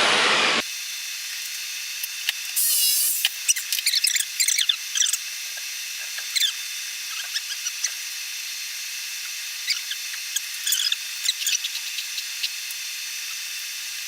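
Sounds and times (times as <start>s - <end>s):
steady hiss: 2.6s - 3.4s.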